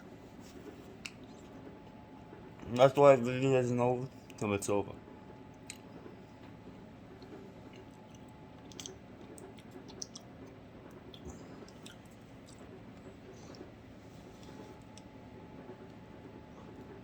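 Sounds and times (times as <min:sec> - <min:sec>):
faint chewing: 0:05.6 - 0:06.4, 0:07.1 - 0:15.2.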